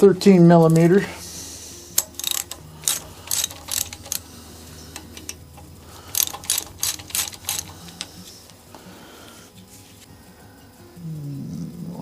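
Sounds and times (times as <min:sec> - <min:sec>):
ratchet wrench clicking: 0:01.9 - 0:08.3.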